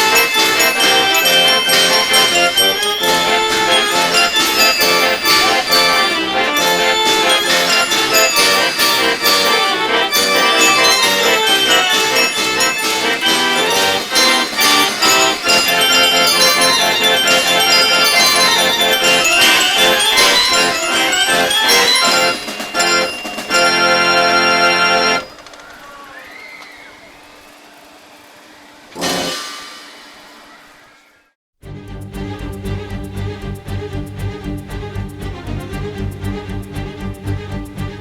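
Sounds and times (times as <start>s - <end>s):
reedy accordion-like lead: 0.0s - 25.3s, 29.0s - 29.6s
upbeat instrumental music: 0.0s - 25.3s, 31.7s - 38.0s
jingling percussion: 0.0s - 26.2s, 29.0s - 30.2s.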